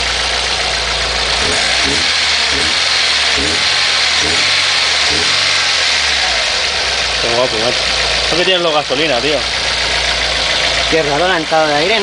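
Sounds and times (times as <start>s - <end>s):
car engine intake hiss: 0.0s - 8.4s
engine throttle blips: 0.0s - 12.0s.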